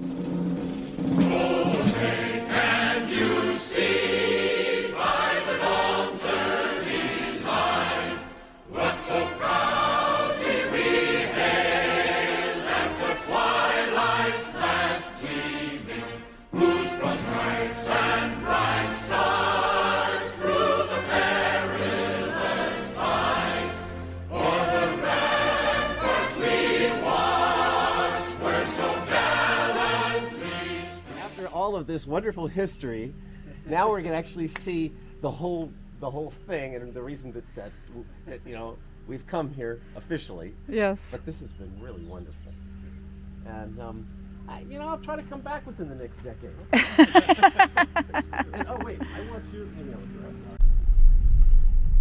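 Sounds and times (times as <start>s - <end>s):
choir singing: 1.0s - 31.9s, 47.0s - 49.2s.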